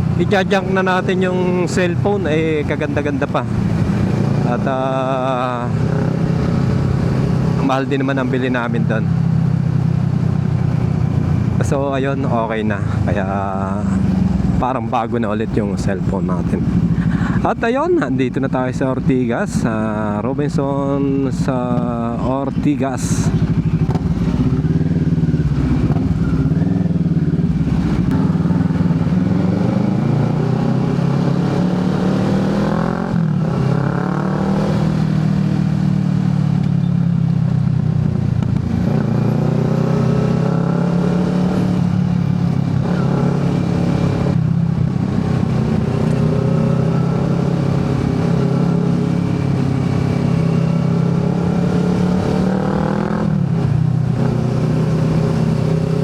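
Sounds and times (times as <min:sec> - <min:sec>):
motorcycle engine shifting gears: 0:23.2 - 0:56.0.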